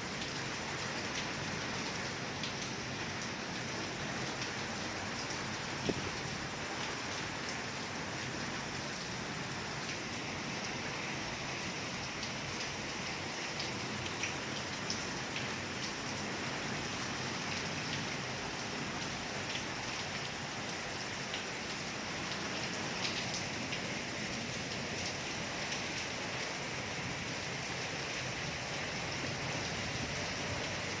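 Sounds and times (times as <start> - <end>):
steady rain falling: 0.0 - 31.0.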